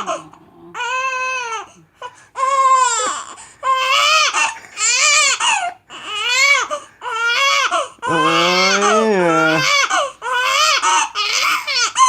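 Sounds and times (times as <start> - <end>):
girl crying loudly: 8.1 - 9.8.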